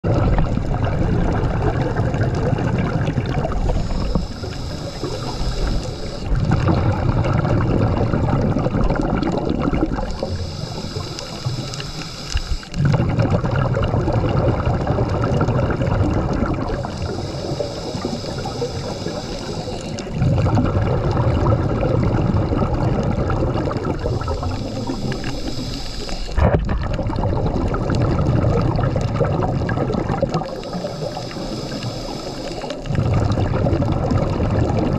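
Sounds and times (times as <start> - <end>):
diver breathing through regulator: 3.0 - 8.3, 9.4 - 13.4, 16.2 - 20.6, 22.1 - 26.7, 30.2 - 33.4.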